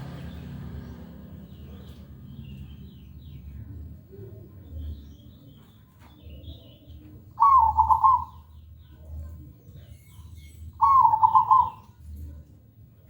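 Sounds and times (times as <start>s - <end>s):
dove cooing: 7.4s - 8.5s, 10.8s - 12.1s.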